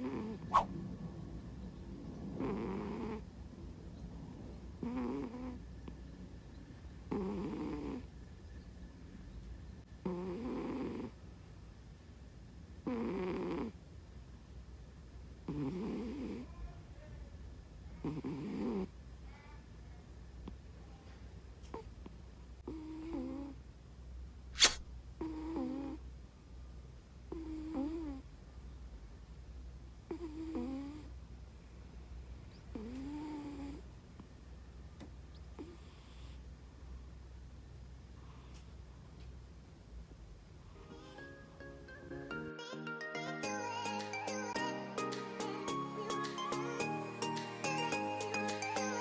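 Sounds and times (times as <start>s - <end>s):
cat snoring: 0.0s - 0.7s, 2.4s - 3.3s, 4.8s - 6.0s, 7.1s - 8.1s, 10.0s - 11.2s, 12.8s - 13.8s, 15.4s - 16.5s, 18.0s - 18.9s, 21.7s - 22.0s, 22.6s - 23.6s, 24.6s - 26.0s, 27.3s - 28.2s, 30.1s - 31.1s, 32.7s - 33.9s, 35.5s - 36.5s, 40.7s - 41.3s
sharp click: 24.6s - 24.8s.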